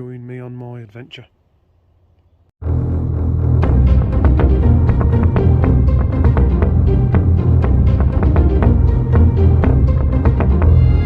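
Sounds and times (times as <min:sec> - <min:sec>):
heavy bass line: 0:02.6 - 0:11.0.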